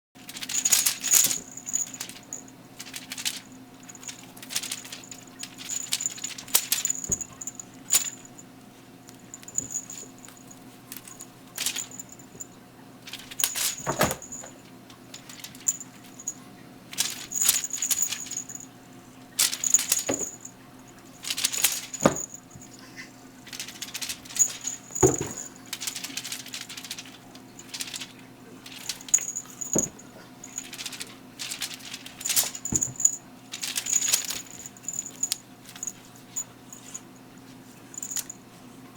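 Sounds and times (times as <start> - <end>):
crinkly toy rustling and jingling: 0.2 - 38.5
thumps of pets landing: 13.2 - 14.6, 23.5 - 35.3.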